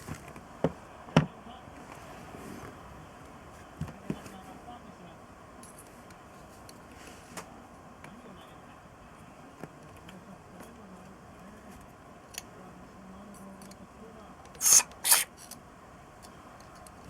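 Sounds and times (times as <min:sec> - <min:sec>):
faint clicks of small parts: 0:13.3 - 0:13.8, 0:16.2 - 0:17.0
short hissing spray bursts: 0:14.6 - 0:15.3.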